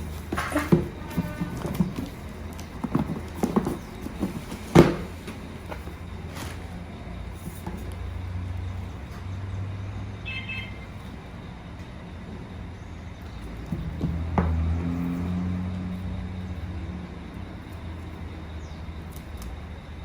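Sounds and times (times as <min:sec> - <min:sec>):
knocks and clicks of handling: 0:00.0 - 0:06.7, 0:13.3 - 0:15.4.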